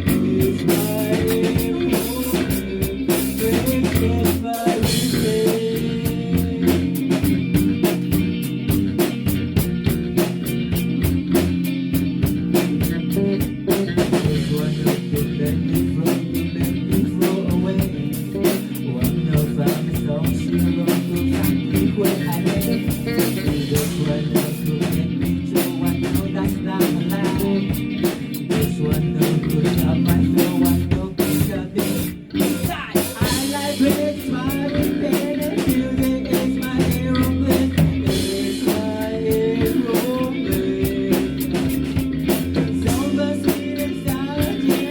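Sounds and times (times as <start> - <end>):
band playing drums and guitar: 0.0 - 44.9.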